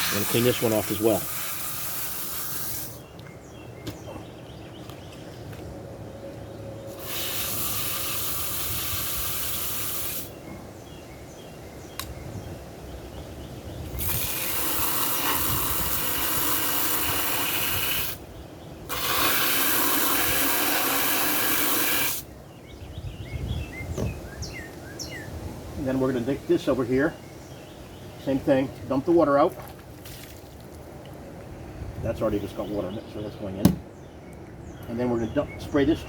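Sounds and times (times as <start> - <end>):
hose water spraying on plastic tub: 0.0 - 3.0, 6.9 - 10.4, 14.0 - 18.2, 18.9 - 22.3.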